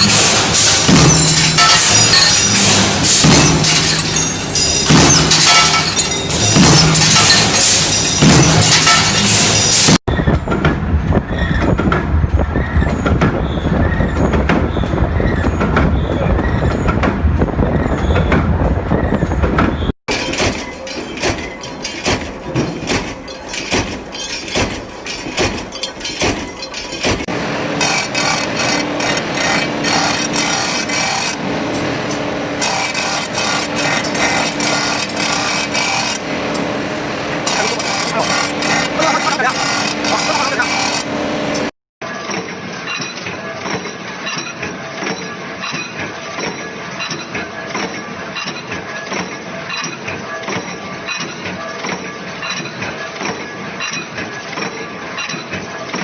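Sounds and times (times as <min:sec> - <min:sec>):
machinery clattering rapidly: 0:00.0 - 0:18.6, 0:19.4 - 0:36.8, 0:37.4 - 0:41.7
heavy machinery rumble: 0:00.0 - 0:41.7
mechanical hum: 0:00.0 - 0:56.0.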